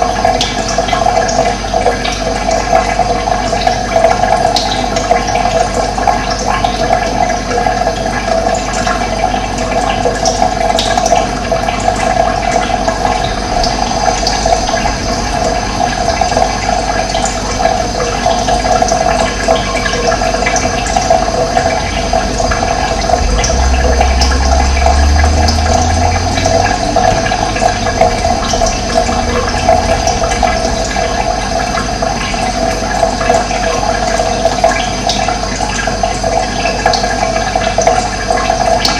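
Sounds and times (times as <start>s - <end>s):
running water: 0.0s - 38.9s
low hum: 10.1s - 36.0s.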